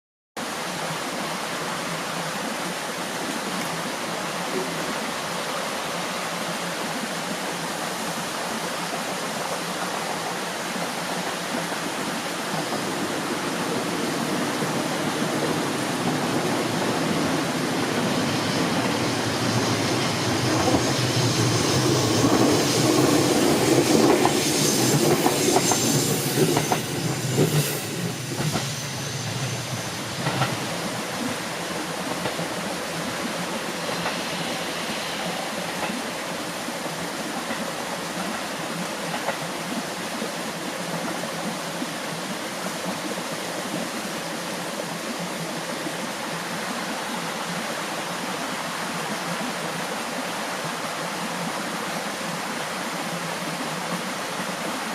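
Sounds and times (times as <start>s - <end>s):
electric train running past: 0.4s - 54.9s
wheels clacking over rail joints: 12.5s - 31.4s.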